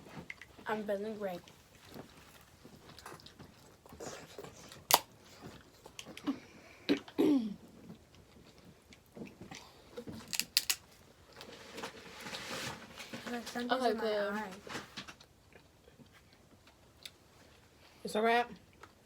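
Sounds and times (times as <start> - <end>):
chewing and eating: 0.0 - 0.7, 1.3 - 11.5, 15.1 - 17.8
crab shells cracking: 4.8 - 5.1, 10.1 - 11.0.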